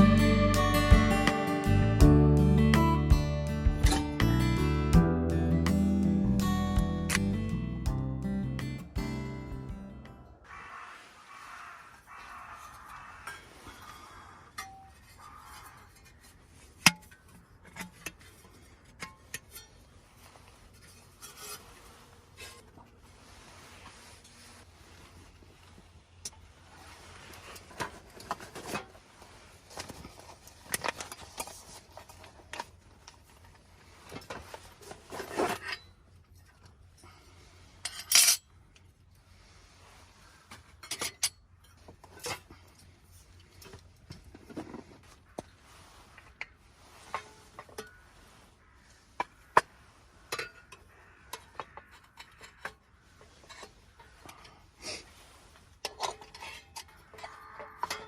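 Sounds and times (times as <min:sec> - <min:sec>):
utensils clattering: 0:40.8 - 0:42.5, 0:55.8 - 0:58.0.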